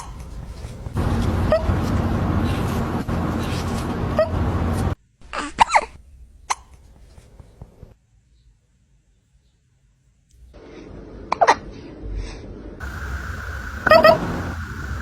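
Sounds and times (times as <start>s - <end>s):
loud steady background noise: 0.9s - 5.0s, 12.8s - 15.0s.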